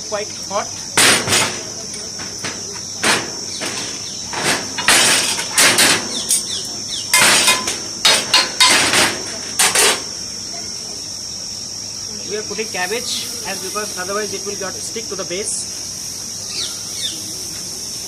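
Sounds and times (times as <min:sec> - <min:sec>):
metal cookware clanking: 0:01.0 - 0:10.1
hiss bursts: 0:12.5 - 0:18.0.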